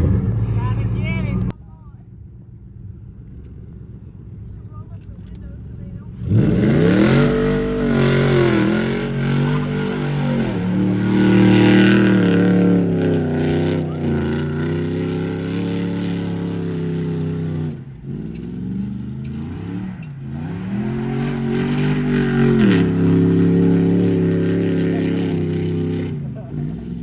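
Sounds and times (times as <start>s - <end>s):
car engine revving high: 6.1s - 27.0s.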